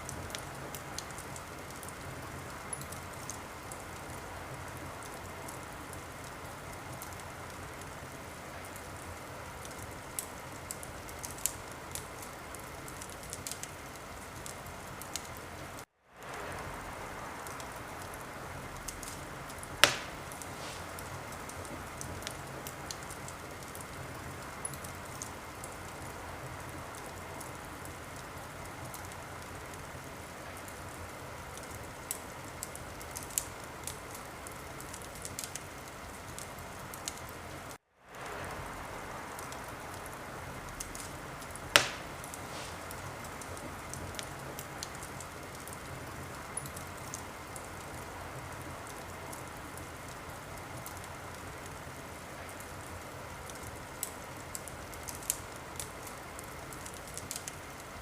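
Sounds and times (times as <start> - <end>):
wood fire crackling: 0.0 - 58.0
loud fire pop: 19.8 - 21.1, 41.7 - 42.9.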